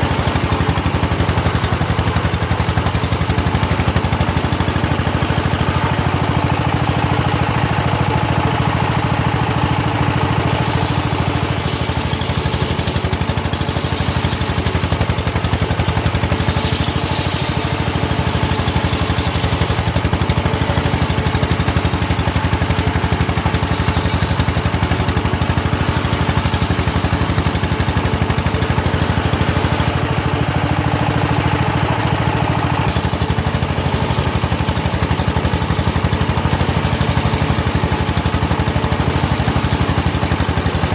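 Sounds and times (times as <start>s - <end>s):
circular saw running: 0.0s - 40.9s
saw blade ripping through wood: 10.2s - 29.5s, 32.9s - 36.2s.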